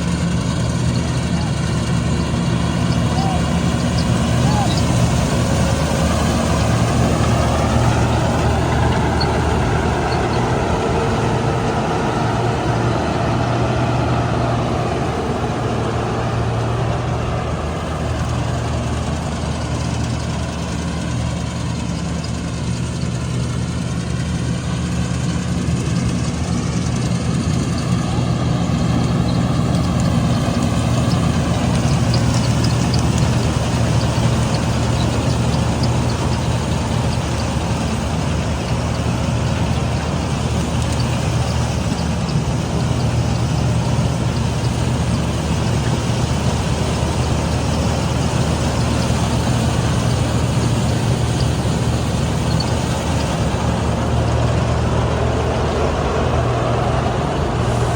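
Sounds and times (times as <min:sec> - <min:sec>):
heavy diesel engine running: 0:00.0 - 0:57.9.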